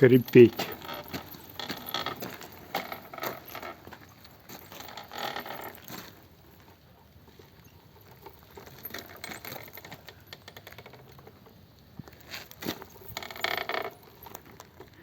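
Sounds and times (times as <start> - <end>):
motorcycle suspension creaking: 0.0 - 6.7, 7.3 - 15.0.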